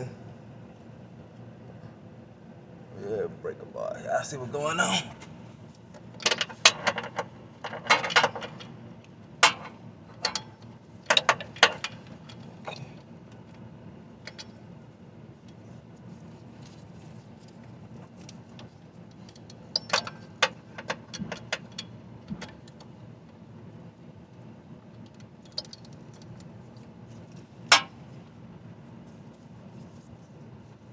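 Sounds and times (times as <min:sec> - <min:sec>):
metal tool clinking and clanking: 0:19.7 - 0:20.2.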